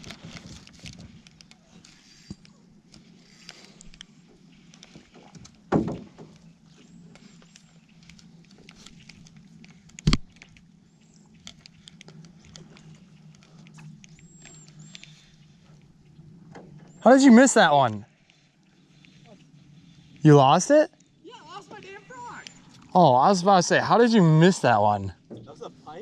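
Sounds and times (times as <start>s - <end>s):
fishing gear clicks and taps: 0.0s - 17.0s.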